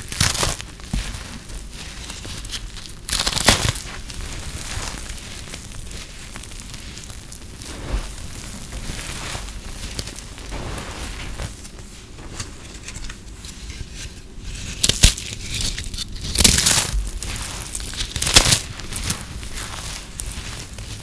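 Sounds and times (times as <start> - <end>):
soap crunching and crackling: 0.0 - 12.2, 14.4 - 21.0.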